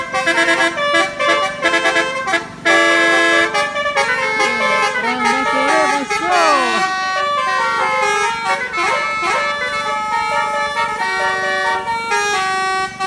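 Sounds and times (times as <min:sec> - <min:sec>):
musical bus horn melody: 0:00.0 - 0:13.0.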